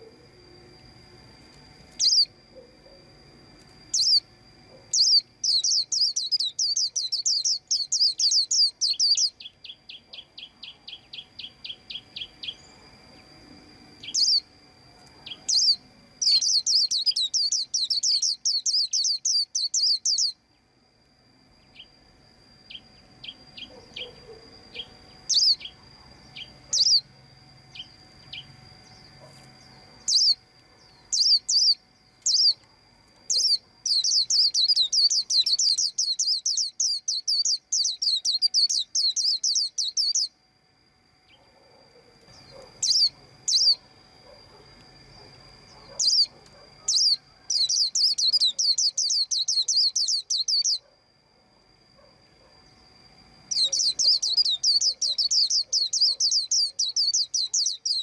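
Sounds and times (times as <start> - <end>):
bird chirping: 1.9 - 3.0, 3.9 - 13.3, 14.0 - 14.5, 15.2 - 20.6, 22.7 - 27.1, 27.7 - 32.7, 33.3 - 40.4, 42.3 - 44.6, 45.3 - 50.9, 53.5 - 58.0
bird ticking calls: 4.9 - 12.7, 26.4 - 27.0, 33.3 - 40.3, 53.5 - 58.0.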